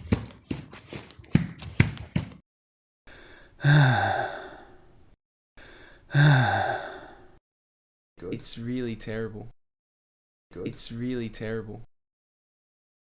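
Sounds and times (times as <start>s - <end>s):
heavy voiced sigh: 3.1s - 4.9s, 5.6s - 7.4s.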